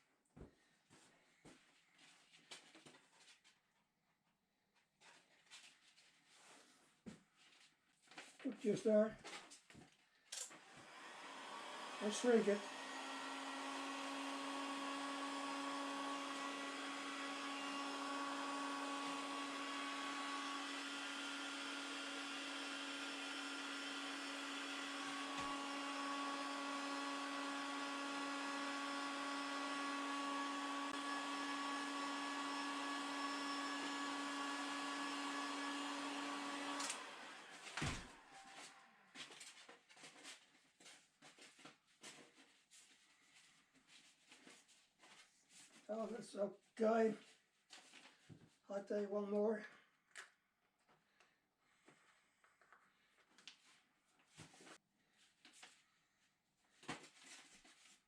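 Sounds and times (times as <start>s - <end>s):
heat gun blowing: 10.4s - 39.0s.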